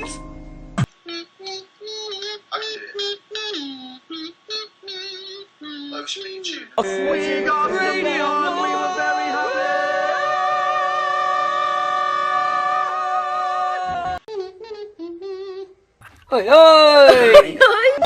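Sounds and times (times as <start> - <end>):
voices singing a harmonised note: 6.8 - 14.2.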